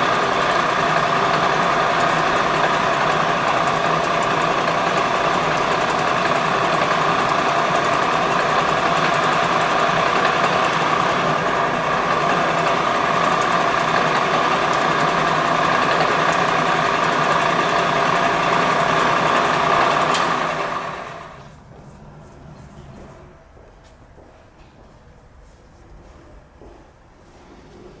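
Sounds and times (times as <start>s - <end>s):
milling machine humming: 0.0s - 21.6s.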